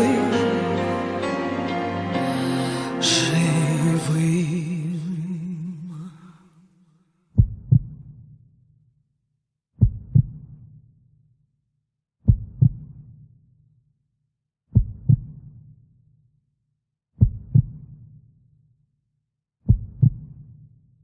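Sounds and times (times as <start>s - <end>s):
heartbeat thumps: 7.4s - 8.0s, 9.8s - 10.4s, 12.3s - 12.9s, 14.7s - 15.3s, 17.2s - 17.8s, 19.7s - 20.3s.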